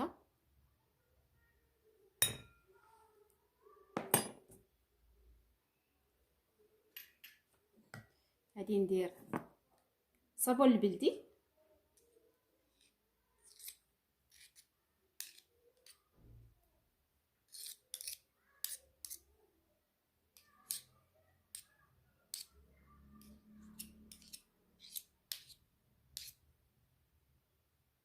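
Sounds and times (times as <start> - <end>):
spoon scraping and clicking on bowl: 17.5 - 19.3, 22.3 - 22.6, 23.2 - 26.4.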